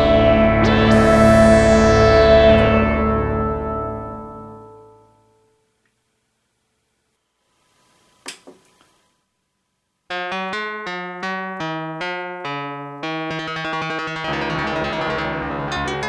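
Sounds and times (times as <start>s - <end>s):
synth electric piano notes: 0.0s - 5.1s, 10.1s - 16.0s.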